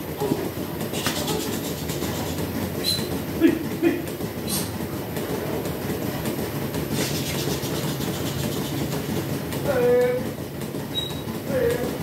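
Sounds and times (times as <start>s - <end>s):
milking machinery rumble: 0.0s - 12.0s.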